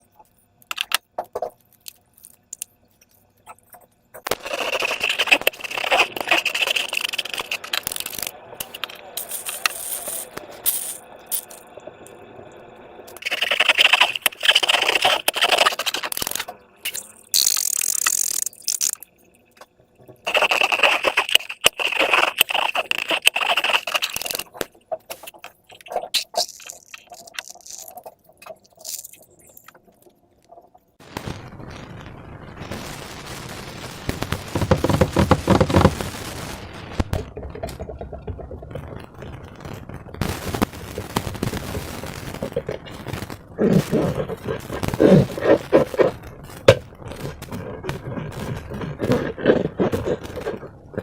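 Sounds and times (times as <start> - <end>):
hands rubbing slime and balloons: 4.3 - 11.5, 20.3 - 24.5
scattered clicks: 13.1 - 19.7.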